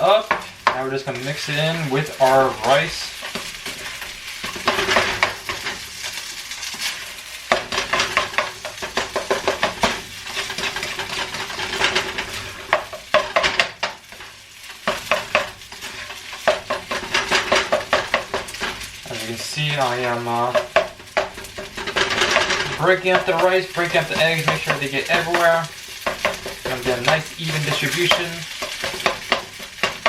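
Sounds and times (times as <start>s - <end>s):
rice sizzling: 0.0s - 30.0s
spatula scraping wok: 0.0s - 30.0s.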